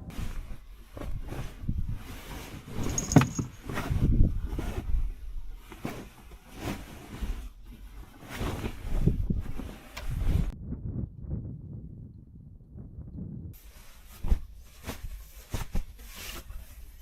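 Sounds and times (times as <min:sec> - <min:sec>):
wind buffeting microphone: 0:00.0 - 0:02.2, 0:03.7 - 0:05.6, 0:08.7 - 0:13.6
knocks and rustles: 0:00.1 - 0:10.6, 0:13.6 - 0:16.9.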